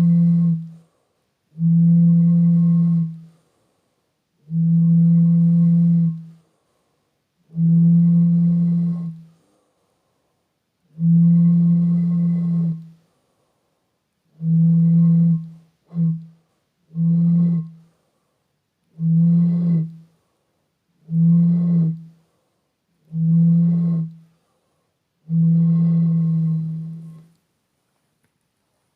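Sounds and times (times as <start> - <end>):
breathy bottle hoots: 0.0 - 0.8, 1.5 - 3.3, 4.4 - 6.4, 7.5 - 9.3, 10.8 - 13.0, 14.3 - 16.3, 16.9 - 18.0, 18.9 - 20.2, 21.0 - 22.2, 23.0 - 24.3, 25.2 - 27.3.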